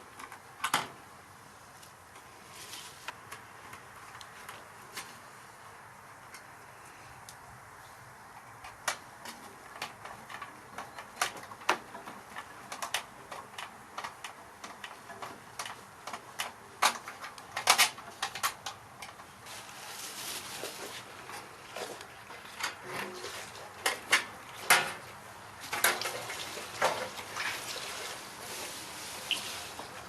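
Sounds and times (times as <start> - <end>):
small tools clicking and tapping: 8.3 - 19.3.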